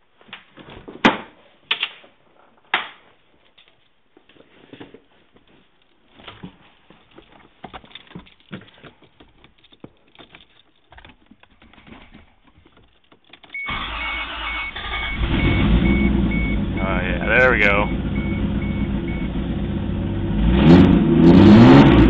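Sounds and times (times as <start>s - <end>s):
starter motor cranking engine: 13.4s - 16.9s.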